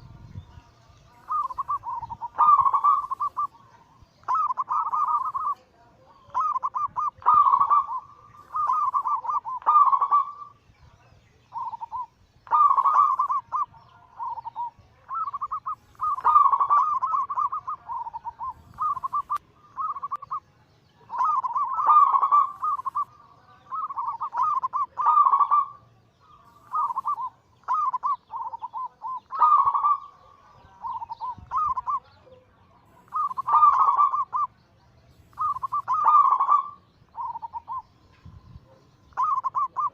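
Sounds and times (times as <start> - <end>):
doves cooing: 1.1 - 10.6, 11.5 - 20.4, 21.0 - 34.6, 35.2 - 39.9.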